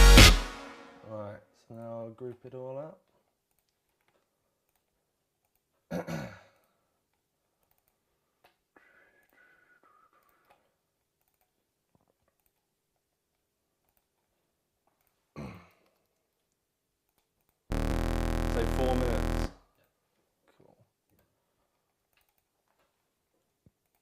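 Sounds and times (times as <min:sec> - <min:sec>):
short falling-pitch sound: 0:17.7 - 0:19.5.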